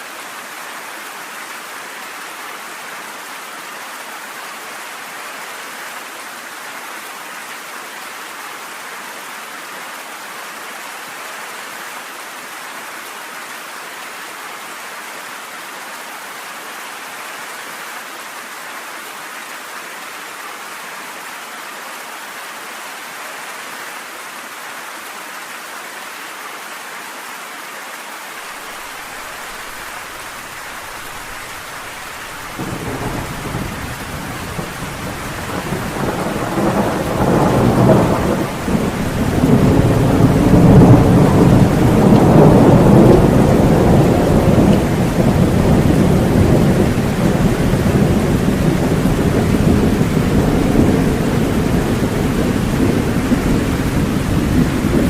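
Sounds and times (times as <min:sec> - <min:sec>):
steady rain hiss: 0:00.0 - 0:55.0
rolling thunder rumble: 0:30.8 - 0:55.0.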